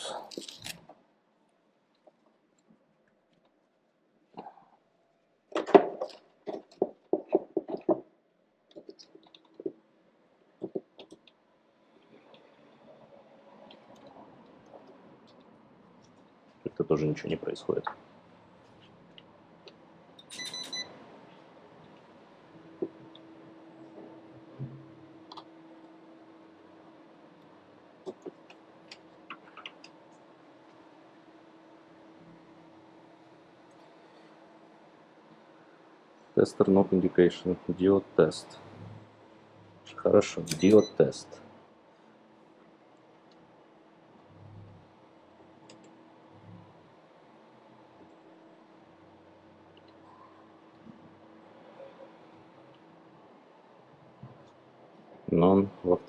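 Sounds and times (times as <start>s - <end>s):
faint steady hum: 0.0s - 56.0s
small hard parts clicking and knocking: 5.5s - 8.1s.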